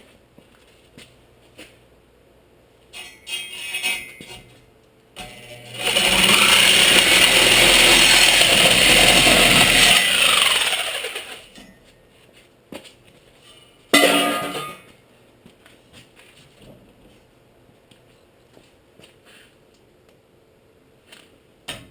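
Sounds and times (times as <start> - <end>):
reciprocating saw cutting metal pipe: 3.0 - 4.5, 5.2 - 11.5.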